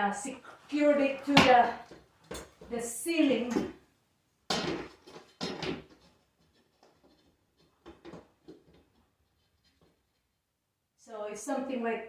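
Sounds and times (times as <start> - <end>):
scraping and rustling of materials: 4.7 - 10.5.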